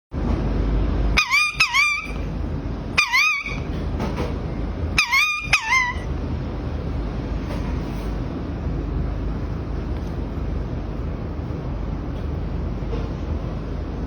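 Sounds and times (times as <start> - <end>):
steady background hum: 0.1 - 14.0
parrot warbling calls: 1.2 - 2.3, 2.9 - 3.8, 4.9 - 6.2.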